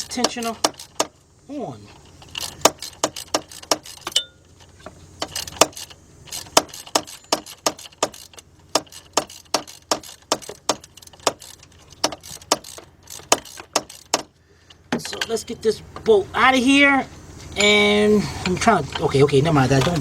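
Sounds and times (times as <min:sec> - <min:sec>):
ratchet clicking rapidly: 0:00.0 - 0:01.2, 0:02.0 - 0:14.3.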